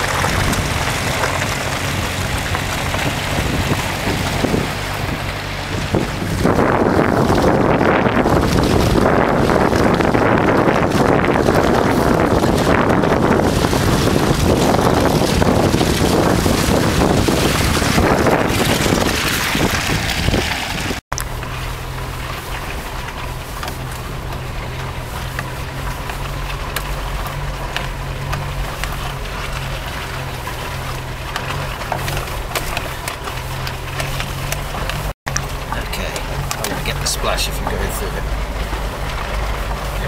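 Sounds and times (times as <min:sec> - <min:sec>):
engine running at low revs: 0:00.0 - 0:40.0
wind buffeting microphone: 0:00.0 - 0:40.0.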